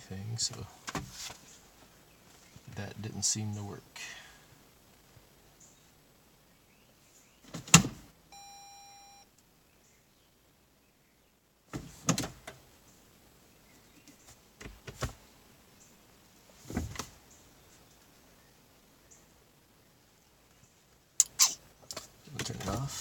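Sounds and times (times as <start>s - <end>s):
electronic beep: 8.3s - 9.3s.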